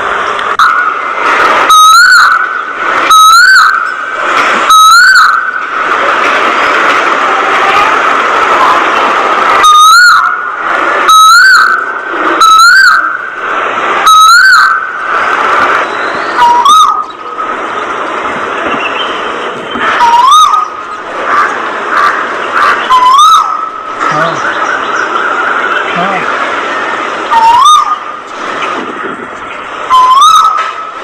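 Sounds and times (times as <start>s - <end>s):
birds chattering: 14.4s - 28.4s.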